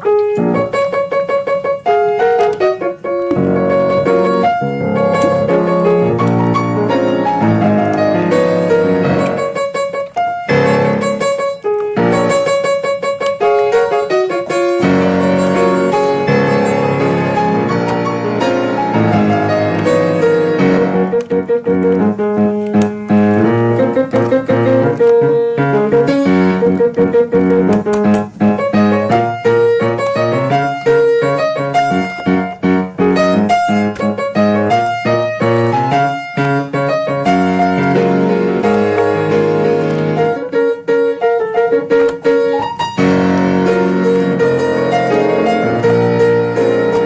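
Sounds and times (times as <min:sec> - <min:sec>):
piano music: 0:00.0 - 0:47.0.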